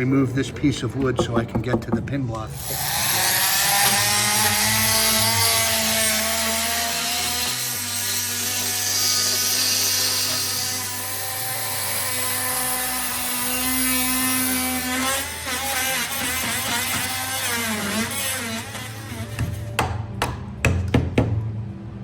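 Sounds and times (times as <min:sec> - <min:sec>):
sharp knocks: 0:00.9 - 0:02.2, 0:19.4 - 0:21.4
power tool cutting wood: 0:02.6 - 0:20.0.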